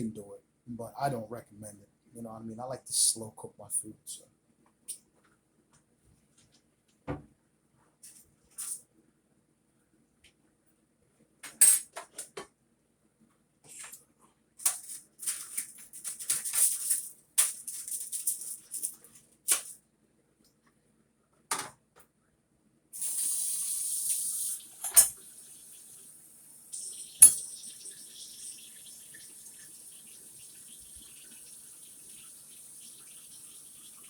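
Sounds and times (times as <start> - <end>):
knock: 7.1 - 7.3
kitchen clatters: 11.4 - 12.5, 14.6 - 19.8, 24.7 - 25.2, 26.8 - 27.8
crinkly rustling: 14.6 - 19.4.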